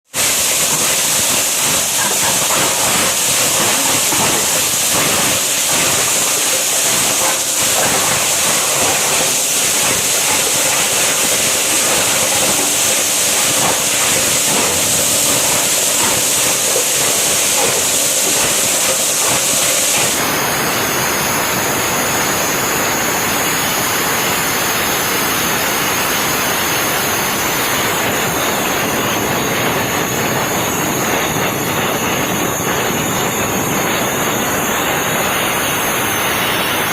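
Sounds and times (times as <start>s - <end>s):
shredder grinding plastic bottles: 0.2s - 20.3s.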